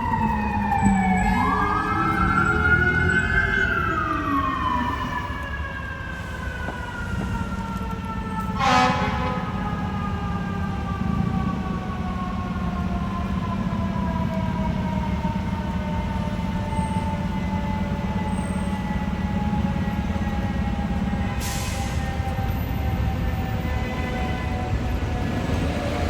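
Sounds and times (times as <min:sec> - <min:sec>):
fire engine siren wailing: 0:00.0 - 0:26.0
air horn blast: 0:08.6 - 0:09.8.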